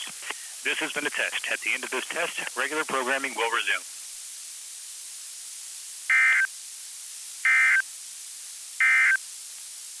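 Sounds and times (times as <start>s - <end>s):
radio hiss: 0.0s - 10.0s
digital data tone bursts: 6.1s - 6.5s, 7.4s - 7.8s, 8.8s - 9.2s.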